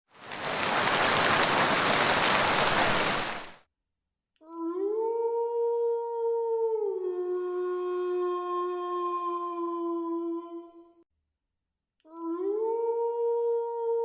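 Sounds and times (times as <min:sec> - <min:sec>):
loud even hiss: 0:00.2 - 0:03.6.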